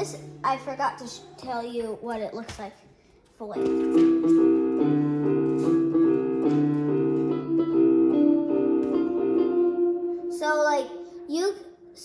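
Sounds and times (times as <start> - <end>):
electronic keyboard chords: 3.6 - 12.0.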